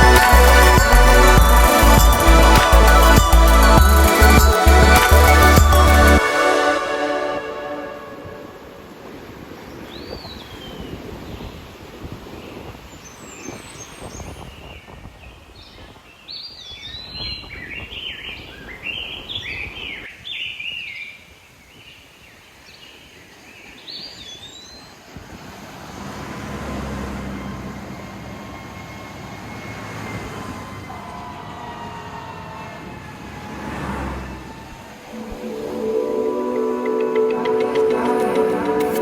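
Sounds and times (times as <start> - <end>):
wind: 0.0 - 39.0
faint steady tones: 34.8 - 39.0.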